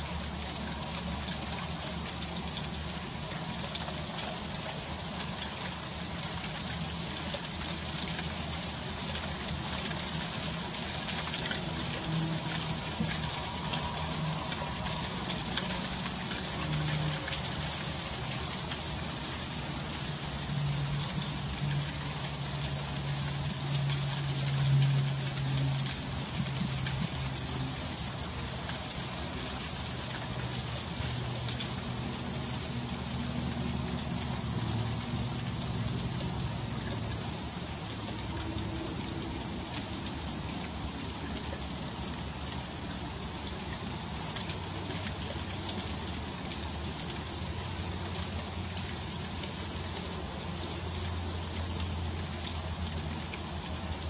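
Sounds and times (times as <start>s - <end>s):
freezing rain ticking on surfaces: 0.0s - 54.0s.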